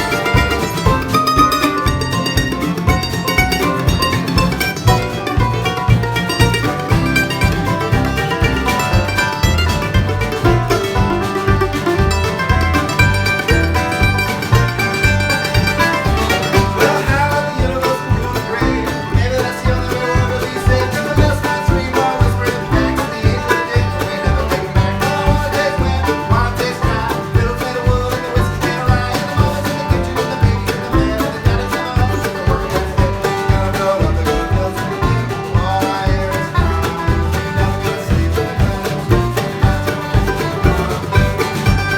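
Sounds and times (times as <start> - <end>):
band playing country music: 0.0 - 41.9.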